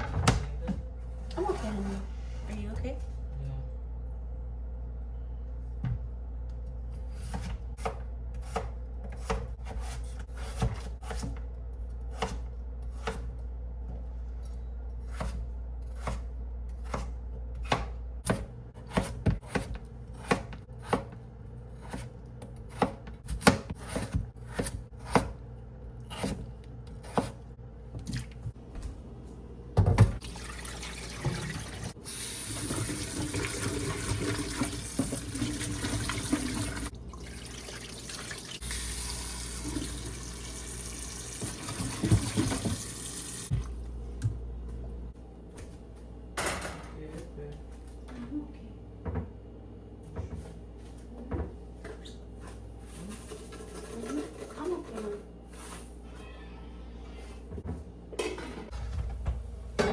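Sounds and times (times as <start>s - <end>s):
kitchen knocks and clatters: 0.0s - 1.8s, 29.8s - 30.2s, 41.4s - 43.7s, 46.3s - 47.2s, 57.5s - 59.9s
tap running into sink: 40.9s - 43.7s.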